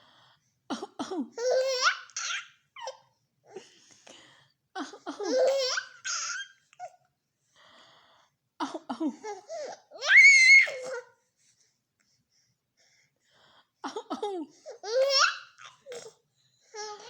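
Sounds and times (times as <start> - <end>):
baby laughing: 1.4 - 3.0, 5.1 - 6.9, 14.8 - 16.1.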